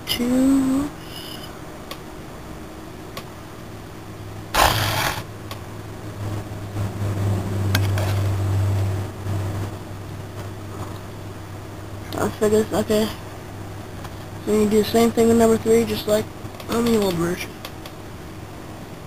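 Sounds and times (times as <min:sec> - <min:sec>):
steady low hum: 0:00.0 - 0:19.0
loud rustling burst: 0:04.5 - 0:05.3.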